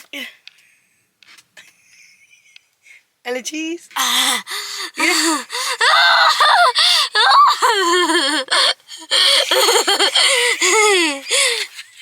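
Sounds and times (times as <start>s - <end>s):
girl laughing and giggling: 1.6s - 2.7s, 4.4s - 12.0s.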